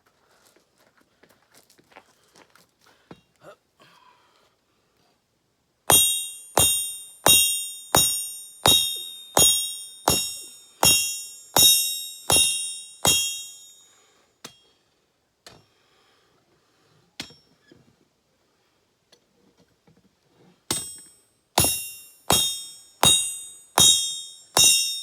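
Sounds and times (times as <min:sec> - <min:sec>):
hammer striking steel on anvil: 0:05.9 - 0:14.7, 0:20.7 - 0:25.0.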